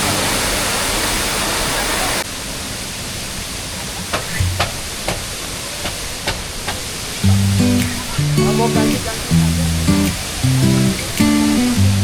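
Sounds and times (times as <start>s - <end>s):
rushing water hiss: 0.0s - 12.0s
waterfall roaring: 0.0s - 12.0s.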